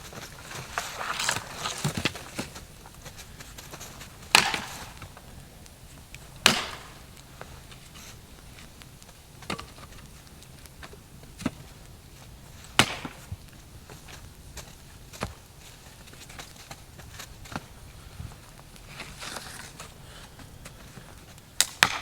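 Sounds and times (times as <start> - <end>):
wood being chopped: 4.2 - 5.1, 6.4 - 7.1, 12.8 - 13.3, 21.6 - 22.0.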